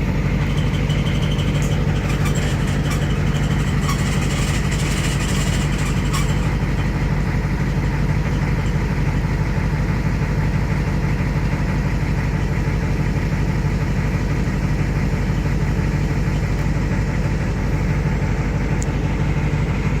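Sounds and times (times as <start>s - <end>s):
diesel engine idling: 0.0s - 20.0s
high squeal: 0.5s - 7.0s.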